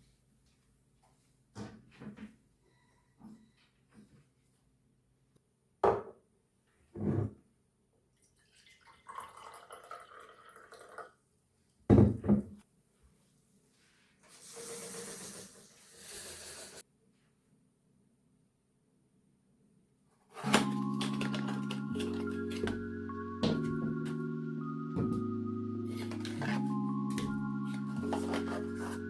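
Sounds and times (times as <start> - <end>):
water running from tap: 8.4 - 11.0, 14.4 - 16.8.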